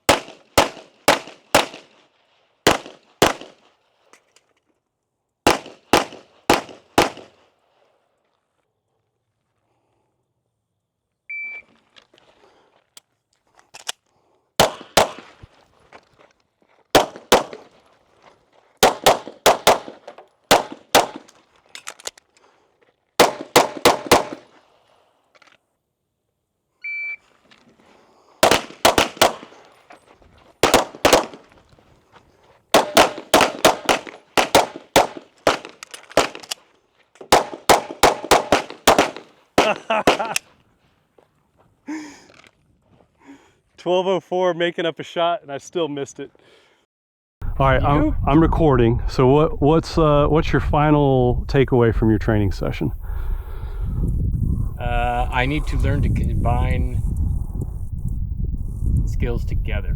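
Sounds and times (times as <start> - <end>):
rapid handgun shots: 0.0 - 2.0, 2.7 - 3.6, 5.5 - 7.4, 14.6 - 15.4, 16.9 - 17.8, 18.8 - 21.3, 23.2 - 24.6, 28.4 - 29.7, 30.6 - 31.5, 32.7 - 36.6, 37.3 - 40.4
shot timer beep: 11.3 - 11.6, 26.8 - 27.2.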